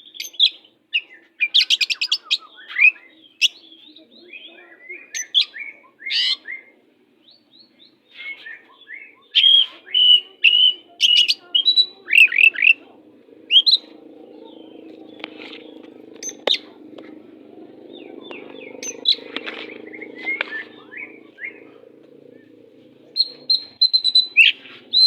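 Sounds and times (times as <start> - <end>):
bird singing whistles and trills: 0.0 - 12.8, 13.5 - 15.1, 23.1 - 25.0.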